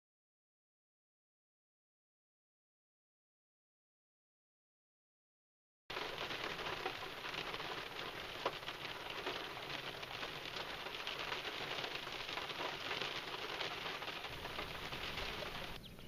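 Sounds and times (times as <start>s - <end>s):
rain pattering: 5.9s - 16.0s.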